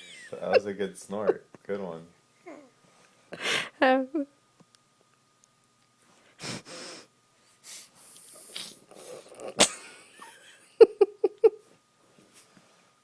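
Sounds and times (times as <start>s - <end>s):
nasal snorts and sniffles: 7.7s - 9.4s.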